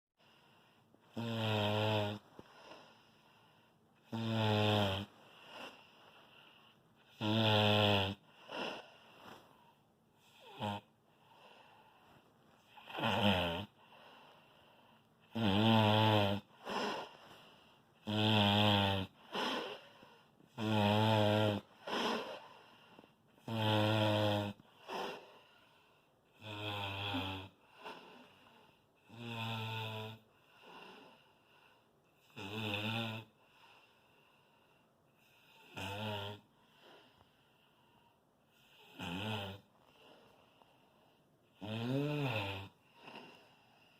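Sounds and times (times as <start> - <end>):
soft breaths: 0.2 - 7.2, 8.1 - 18.1, 18.7 - 29.2, 30.2 - 32.4, 33.2 - 35.8, 36.4 - 39.0, 39.6 - 43.9
loud snoring: 1.1 - 2.3, 4.0 - 5.9, 7.0 - 8.9, 10.2 - 10.9, 12.7 - 13.8, 15.2 - 17.2, 18.0 - 19.9, 20.5 - 22.5, 23.4 - 25.2, 26.4 - 28.3, 29.0 - 31.2, 32.2 - 33.3, 35.2 - 36.5, 38.6 - 39.7, 41.5 - 43.9.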